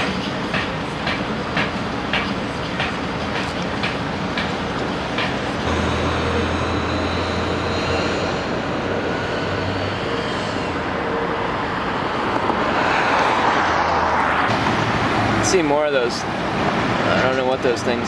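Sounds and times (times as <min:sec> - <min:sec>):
vehicle rumble with low hum: 0:04.6 - 0:15.5
vehicle passing with rushing noise: 0:05.6 - 0:17.5.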